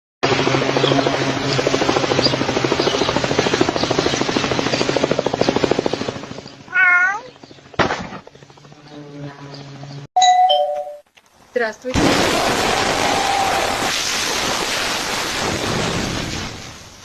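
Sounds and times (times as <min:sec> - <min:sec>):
cat meowing: 0:06.7 - 0:07.3.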